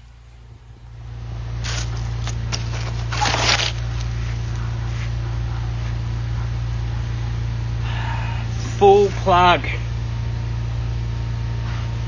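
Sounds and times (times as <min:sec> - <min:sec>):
low mechanical hum: 0:00.0 - 0:12.0
scraping and rustling: 0:01.6 - 0:06.0.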